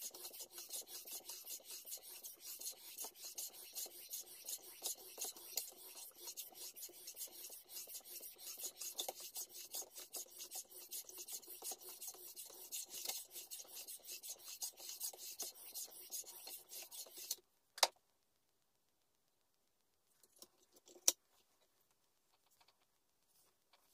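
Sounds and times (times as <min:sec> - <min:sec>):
knife rasping on a whetstone: 0:00.0 - 0:17.4.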